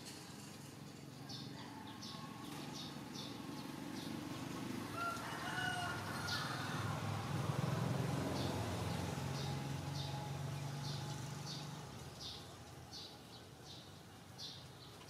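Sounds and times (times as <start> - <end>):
rooster crowing: 4.9 - 7.1.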